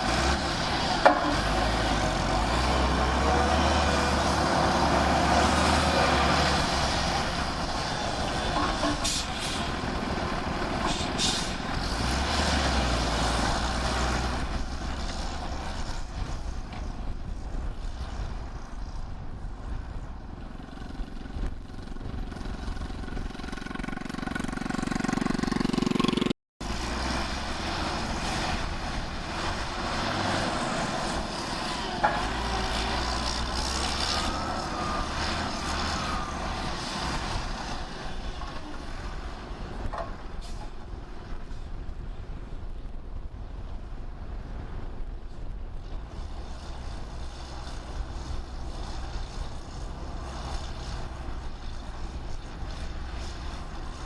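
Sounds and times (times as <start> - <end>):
heavy machinery engines running: 0.0 - 42.0.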